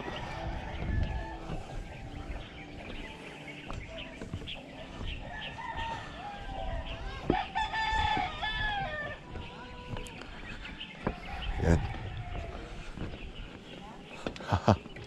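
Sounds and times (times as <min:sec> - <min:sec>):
rooster crowing: 0:05.3 - 0:09.2.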